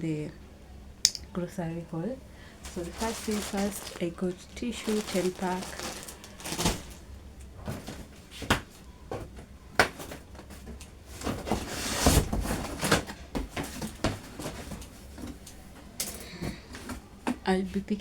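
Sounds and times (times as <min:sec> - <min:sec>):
plastic packaging rustling: 0:02.4 - 0:08.2
groceries knocking and clicking: 0:02.5 - 0:17.4.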